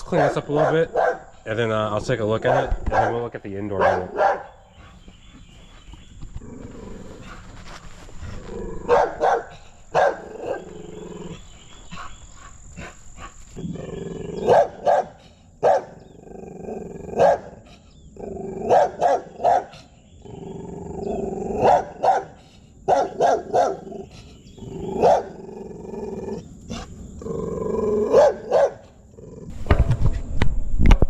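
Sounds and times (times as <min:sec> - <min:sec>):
dog barking: 0:00.1 - 0:01.3, 0:02.4 - 0:04.6, 0:08.8 - 0:10.7, 0:14.4 - 0:16.1, 0:17.2 - 0:17.6, 0:18.6 - 0:19.8, 0:21.6 - 0:24.1, 0:25.0 - 0:25.4, 0:28.1 - 0:28.9.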